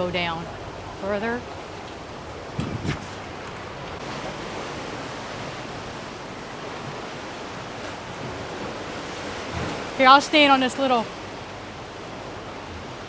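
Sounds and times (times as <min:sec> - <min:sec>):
waves washing on shore: 0:00.0 - 0:13.0.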